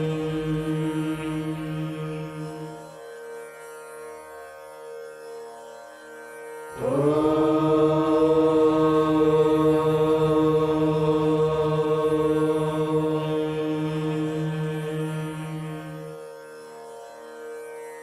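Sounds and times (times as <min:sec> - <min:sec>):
soft steady drone: 0:00.0 - 0:03.0, 0:06.8 - 0:16.2
long held chanted note: 0:06.7 - 0:16.3.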